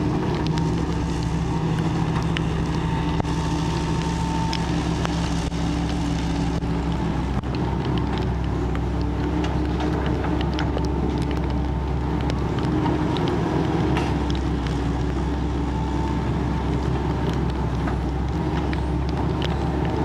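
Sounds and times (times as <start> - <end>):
diesel engine running: 0.0 - 20.0
faint clicks and knocks: 6.8 - 20.0.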